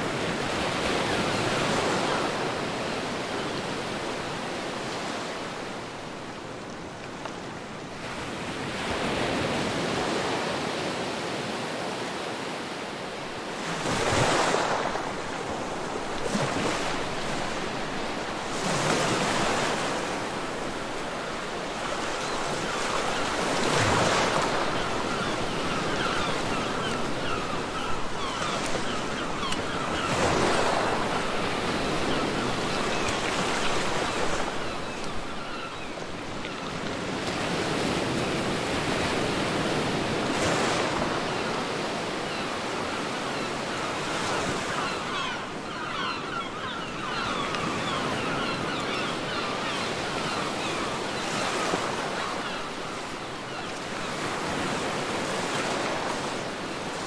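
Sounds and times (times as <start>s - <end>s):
waves breaking on a beach: 0.0s - 57.0s.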